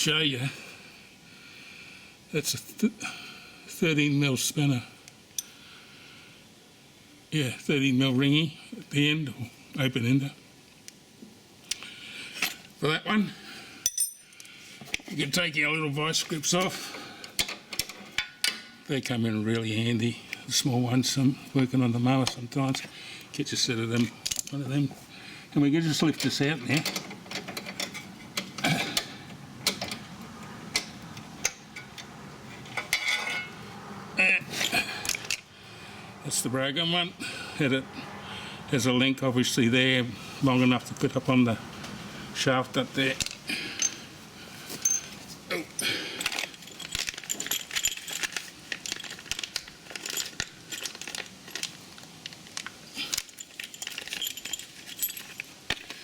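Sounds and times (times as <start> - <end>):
metallic clicks and clinks: 13.8 - 14.5, 43.1 - 44.1, 44.8 - 56.0.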